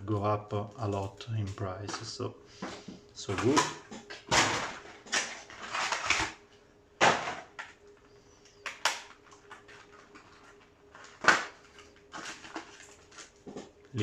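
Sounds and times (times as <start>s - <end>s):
faint steady hum: 0.0s - 14.0s
cardboard packaging rustling: 4.3s - 6.4s, 9.0s - 13.8s.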